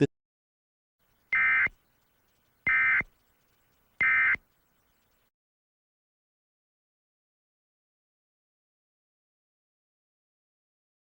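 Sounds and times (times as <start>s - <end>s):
buzzy digital data bursts: 1.3s - 5.2s.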